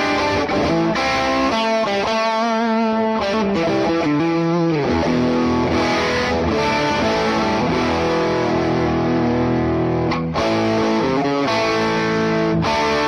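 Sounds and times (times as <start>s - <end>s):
distorted electric guitar chords: 0.0s - 13.0s.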